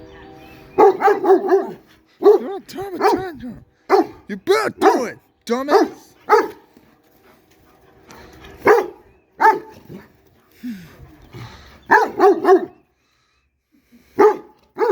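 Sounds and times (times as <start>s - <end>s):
big dog barking: 0.8s - 6.9s, 8.6s - 10.2s, 11.8s - 12.9s, 14.2s - 14.9s.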